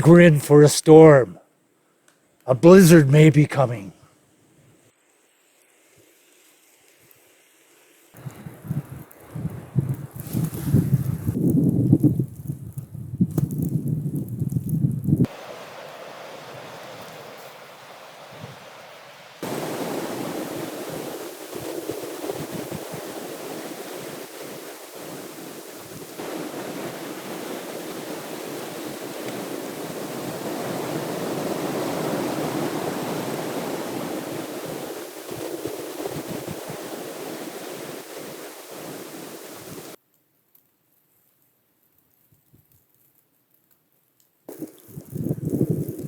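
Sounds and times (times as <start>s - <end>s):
strong wind buffeting microphone: 8.2s - 18.8s, 19.4s - 40.0s, 45.0s - 46.0s.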